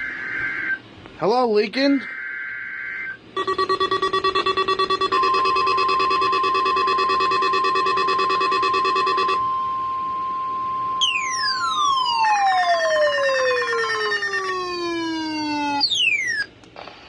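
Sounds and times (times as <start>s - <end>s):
pulsing multi-tone alarm: 2.1s - 16.5s
steady high alarm tone: 2.2s - 16.5s
electronic tone sliding downward: 2.7s - 16.5s
pulsing buzz: 3.4s - 12.6s.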